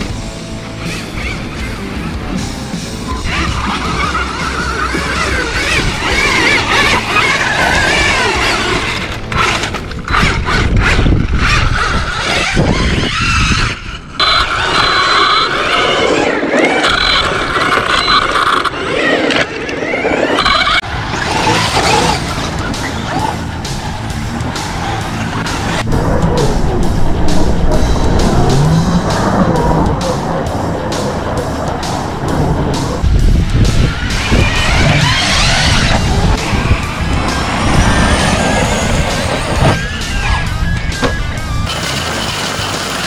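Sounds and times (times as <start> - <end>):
tyres skidding on dirt: 0.0 - 43.0
electric motor whine: 3.1 - 22.7, 27.6 - 41.7.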